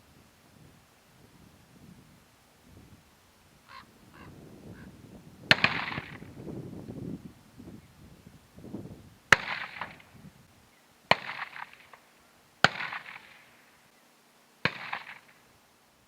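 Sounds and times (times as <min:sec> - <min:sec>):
gunshots with echo: 0:05.5 - 0:06.3, 0:09.3 - 0:10.1, 0:11.1 - 0:11.9, 0:12.6 - 0:13.5, 0:14.6 - 0:15.4.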